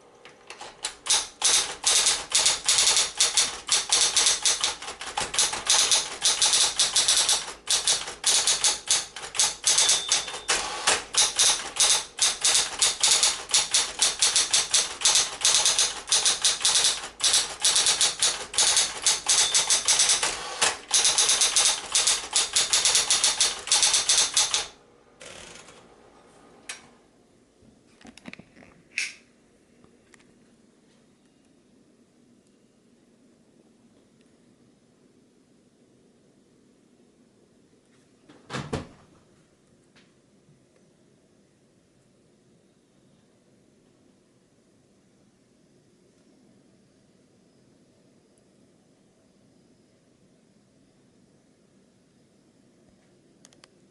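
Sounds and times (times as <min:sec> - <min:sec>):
electric typewriter typing: 0:00.4 - 0:25.9.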